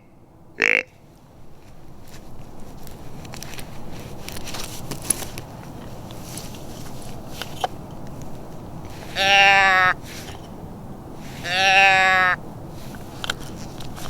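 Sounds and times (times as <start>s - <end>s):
deer bleat call: 0.0s - 1.0s, 8.9s - 10.2s, 11.3s - 12.4s
faint rustles: 1.0s - 11.8s, 12.6s - 14.0s.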